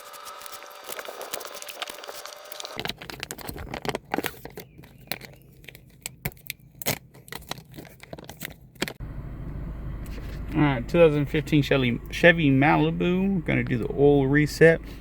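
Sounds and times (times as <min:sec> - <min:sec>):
crinkling handling noises: 0:00.0 - 0:09.0
steady low hum: 0:09.0 - 0:15.0.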